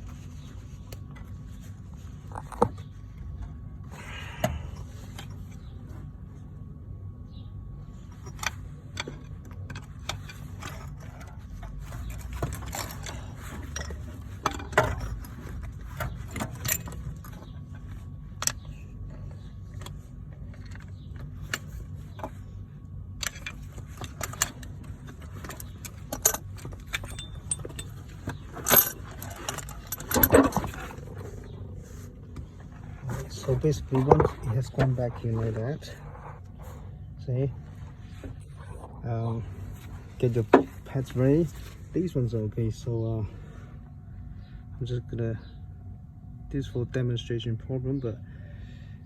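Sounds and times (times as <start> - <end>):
steady low hum: 0.0 - 49.0
hand tools clinking on metal: 23.2 - 31.0.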